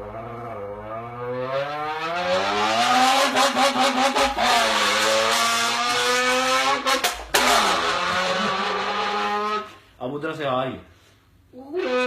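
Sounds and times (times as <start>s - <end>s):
person imitating car engine: 5.9s - 9.7s, 11.5s - 12.0s.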